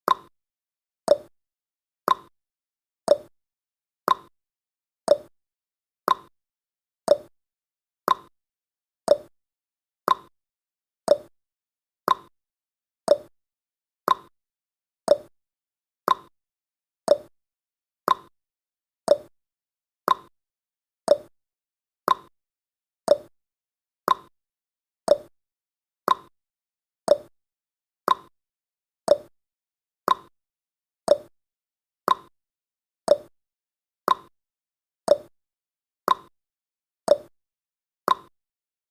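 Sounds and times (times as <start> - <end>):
clock ticking: 29.1 - 29.3.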